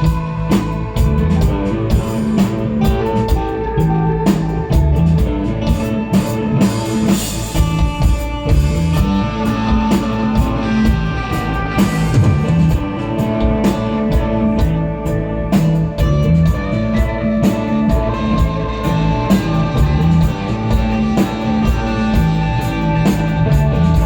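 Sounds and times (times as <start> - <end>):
drum kit beat: 0.0 - 24.0
sustained electric guitar notes: 0.0 - 24.0.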